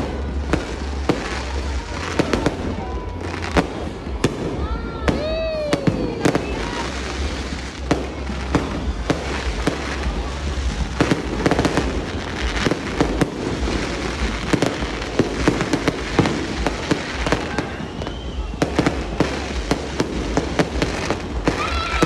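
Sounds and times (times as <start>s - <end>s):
low rumble: 0.0s - 17.5s
fireworks bangs and crackling: 0.0s - 22.0s.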